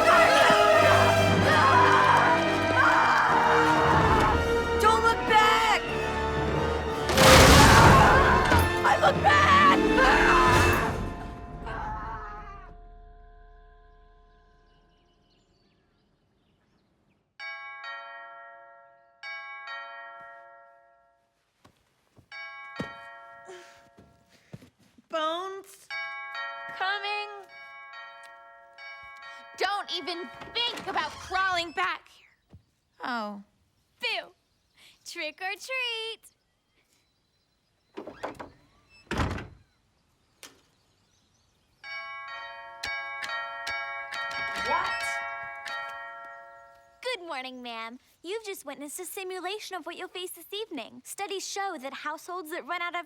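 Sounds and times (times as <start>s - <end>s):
door thudding shut: 7.0s - 9.2s, 37.9s - 39.6s
doorbell chime ringing: 41.9s - 47.0s.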